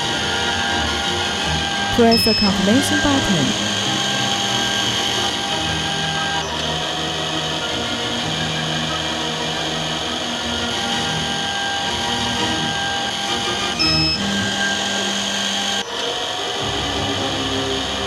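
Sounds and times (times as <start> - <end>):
electric drill motor whining: 0.0 - 18.0
short high tone: 1.9 - 4.3.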